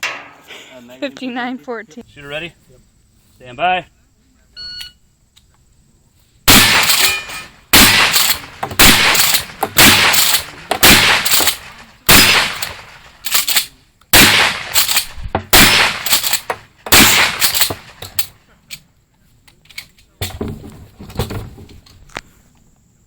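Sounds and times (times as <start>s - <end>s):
shotgun shots: 6.5s - 18.2s.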